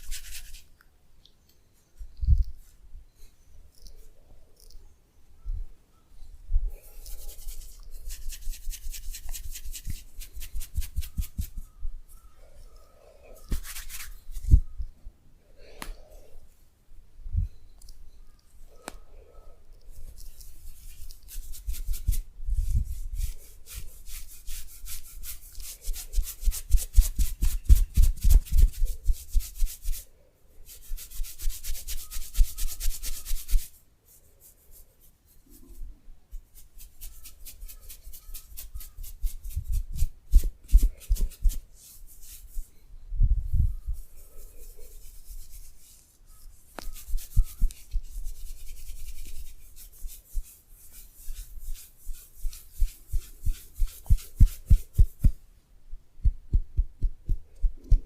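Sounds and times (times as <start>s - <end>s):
hands rubbing body briskly: 0.0s - 0.7s, 6.9s - 11.8s, 13.4s - 14.8s, 20.0s - 30.0s, 30.7s - 33.7s, 36.6s - 42.7s, 43.8s - 55.4s.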